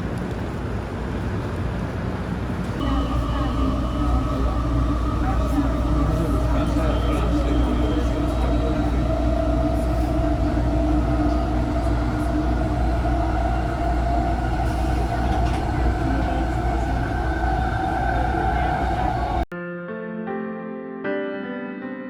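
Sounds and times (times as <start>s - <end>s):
rail vehicle rumble: 0.0s - 19.5s
steady whine: 2.8s - 19.5s.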